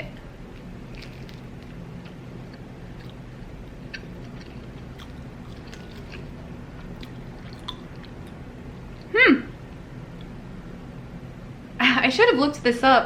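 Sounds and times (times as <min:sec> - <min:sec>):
chewing pastry: 0:00.0 - 0:09.1
pastry crackling: 0:00.0 - 0:09.1
low hum: 0:00.0 - 0:12.8.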